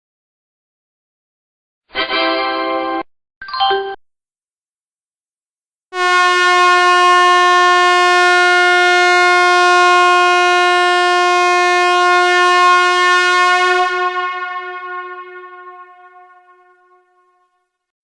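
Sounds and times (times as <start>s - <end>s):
air horn long blast: 5.9s - 17.6s.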